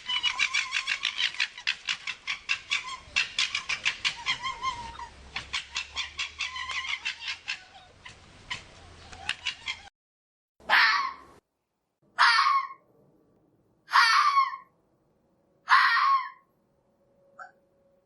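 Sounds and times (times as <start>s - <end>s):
fox chattering calls: 0.0s - 9.9s.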